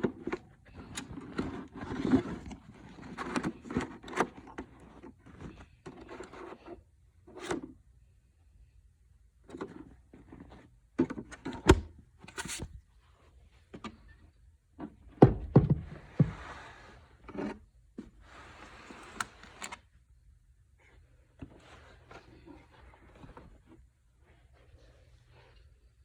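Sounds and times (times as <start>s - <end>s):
irregular knocks and thunks: 14.8s - 16.4s.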